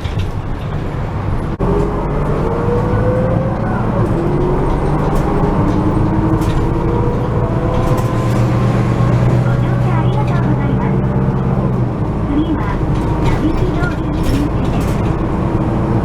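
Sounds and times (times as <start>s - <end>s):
bus engine running: 0.0s - 16.0s
rising engine whine: 1.0s - 16.0s.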